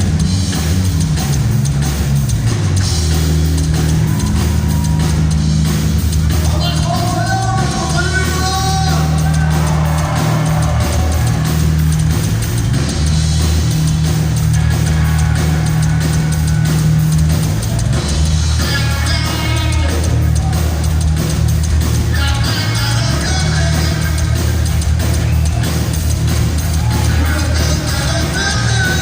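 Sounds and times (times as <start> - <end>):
heavy rock band playing: 0.0 - 29.0.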